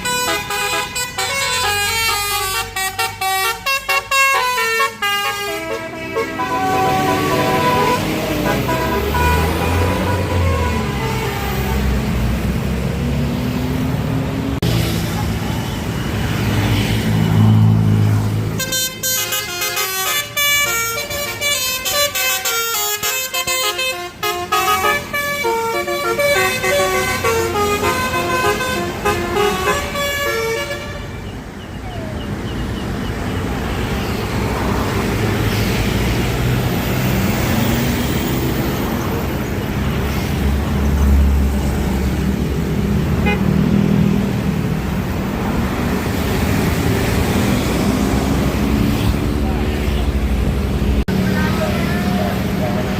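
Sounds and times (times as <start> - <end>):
multi-tone air horn melody: 0.0 - 12.0, 18.6 - 31.2
bus engine rumble: 0.0 - 52.9
road noise: 0.0 - 52.9.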